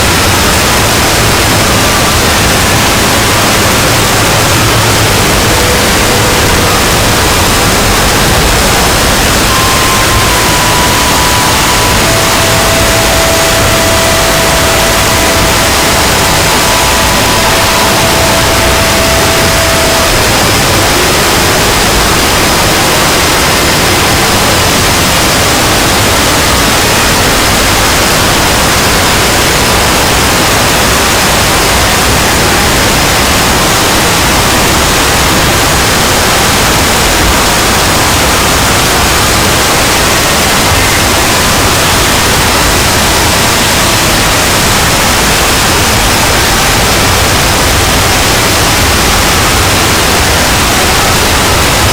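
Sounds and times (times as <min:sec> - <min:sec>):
faint steady tones: 0:00.0 - 0:29.8
loud static noise: 0:00.0 - 0:51.9.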